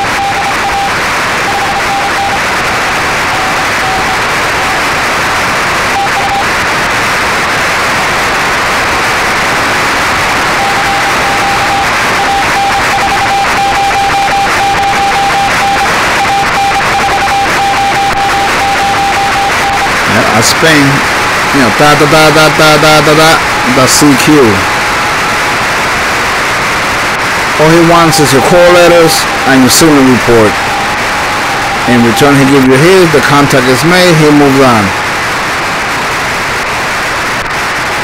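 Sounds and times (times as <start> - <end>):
morse code tone: 0.0 - 6.5, 10.4 - 26.0, 27.6 - 34.7
radio band hiss: 0.0 - 38.0.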